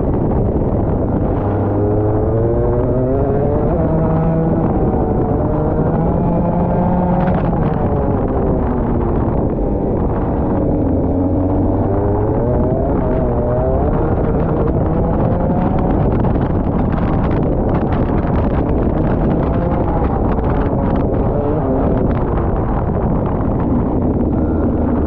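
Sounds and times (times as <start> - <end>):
kart engine revving: 0.0 - 25.0.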